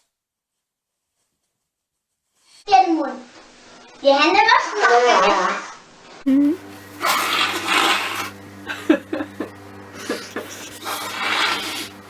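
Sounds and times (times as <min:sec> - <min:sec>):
woman blowing her nose: 0:06.3 - 0:12.0.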